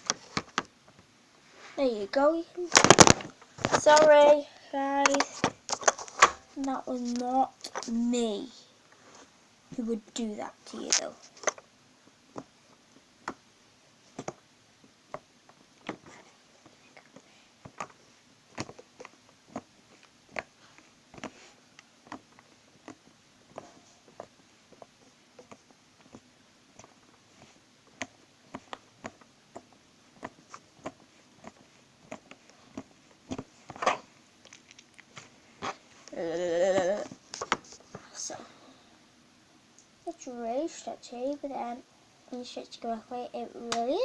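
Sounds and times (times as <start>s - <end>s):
slime squishing with wet pops: 16.7s - 35.8s.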